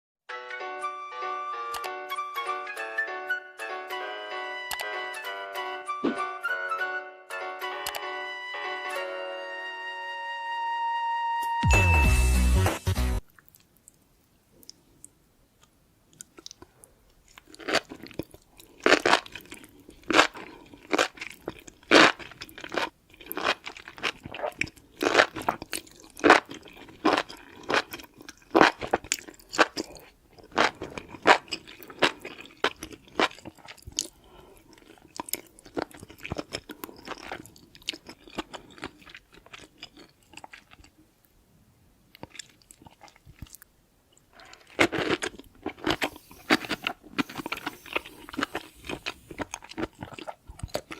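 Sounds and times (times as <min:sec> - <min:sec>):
crunching and chewing food: 0:13.2 - 0:41.4, 0:42.0 - 0:50.9.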